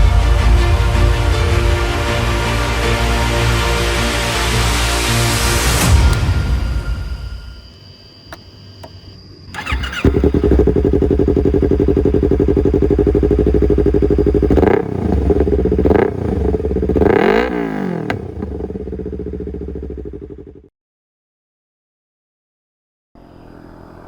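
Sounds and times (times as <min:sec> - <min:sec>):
motorcycle engine idling and revving: 0:09.5 - 0:20.7, 0:23.2 - 0:24.0.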